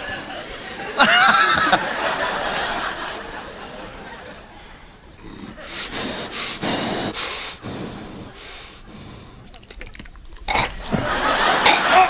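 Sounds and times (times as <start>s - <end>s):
person snorting breathy exhalations: 5.2s - 9.4s.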